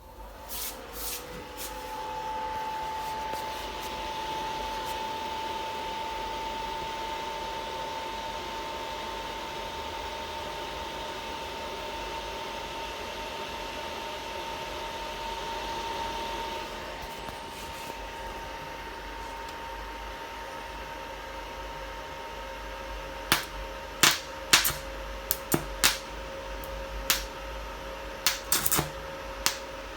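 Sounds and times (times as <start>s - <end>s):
welding machine cooling fan: 22.9s - 29.9s.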